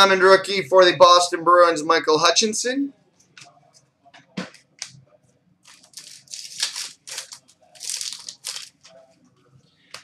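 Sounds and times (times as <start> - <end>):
wrappers rustling and tearing: 5.6 - 9.0.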